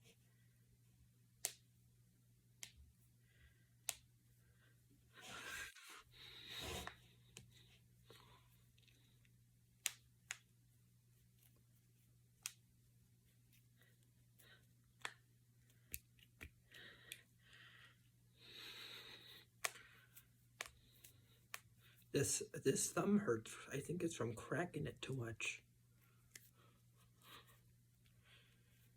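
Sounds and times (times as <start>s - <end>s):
knuckles cracking: 14.8s - 17.6s, 18.6s - 19.9s, 20.5s - 21.8s.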